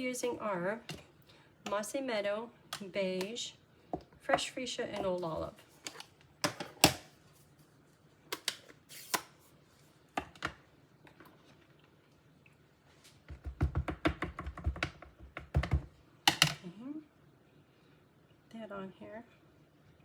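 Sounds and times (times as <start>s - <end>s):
clicks and taps on desk: 13.3s - 16.6s.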